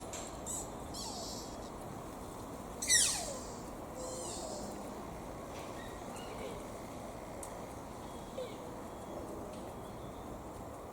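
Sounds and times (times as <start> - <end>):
fawn squeaky calls: 0.5 - 1.6, 2.8 - 4.8.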